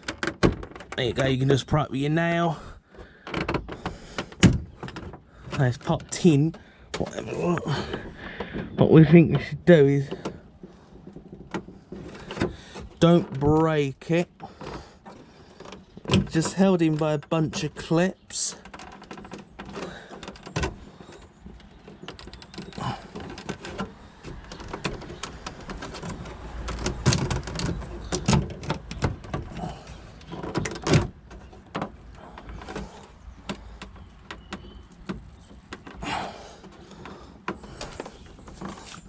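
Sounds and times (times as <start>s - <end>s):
plastic trim clicks and creaks: 0.0s - 39.0s.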